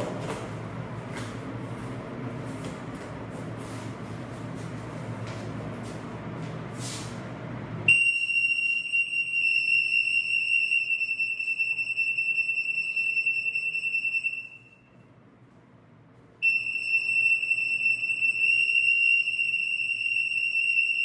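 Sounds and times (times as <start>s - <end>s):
high-pitched alarm buzzer: 7.9s - 14.9s, 16.4s - 21.0s.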